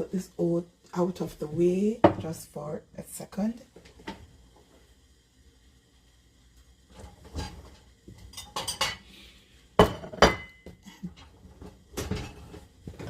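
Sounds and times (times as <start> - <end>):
utensils and dishes clattering: 7.0 - 9.1, 9.8 - 13.0.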